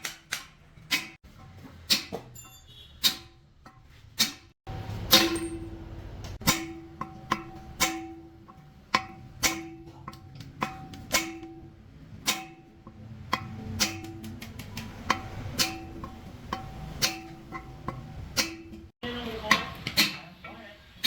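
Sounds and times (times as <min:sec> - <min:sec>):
hammer striking metal: 0:00.0 - 0:20.3.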